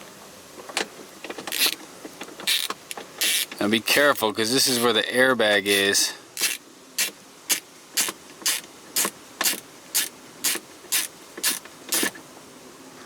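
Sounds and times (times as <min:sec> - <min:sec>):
socket ratchet clicking: 0:01.5 - 0:01.8, 0:02.5 - 0:03.6, 0:05.7 - 0:12.1.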